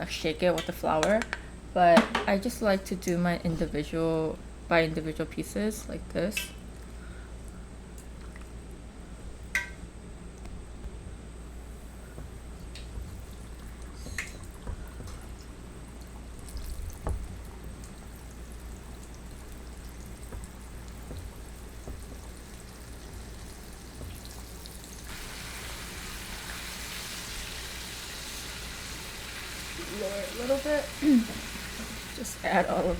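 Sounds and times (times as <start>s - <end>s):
small kitchen clicks: 0.4s - 3.3s, 6.2s - 6.6s, 9.5s - 9.8s
deep-frying oil sizzling: 16.4s - 32.9s.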